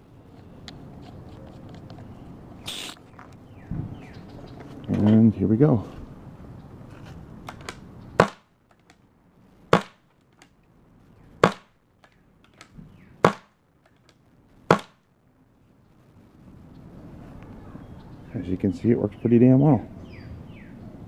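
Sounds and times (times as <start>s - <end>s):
paintball gun shots: 7.5s - 9.0s, 9.7s - 10.0s, 11.4s - 13.6s, 14.7s - 15.0s.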